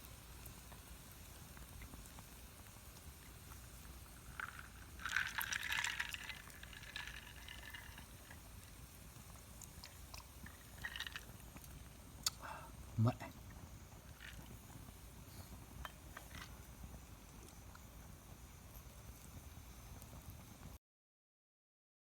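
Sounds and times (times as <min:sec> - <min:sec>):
drink poured into glass: 0:03.4 - 0:12.4, 0:13.0 - 0:17.8.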